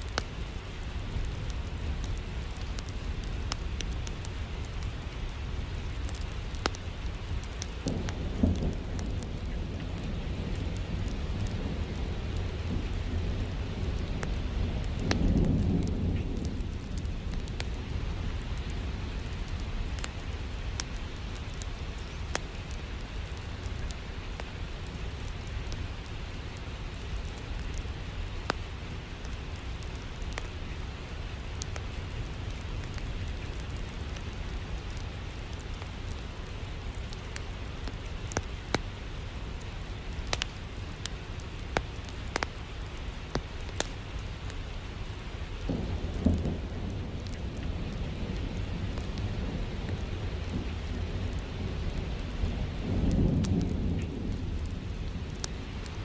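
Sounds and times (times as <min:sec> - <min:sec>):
steady rain: 0:00.0 - 0:56.0
wood fire crackling: 0:00.0 - 0:56.0
low rumble of thunder: 0:00.9 - 0:26.3, 0:45.5 - 0:56.0.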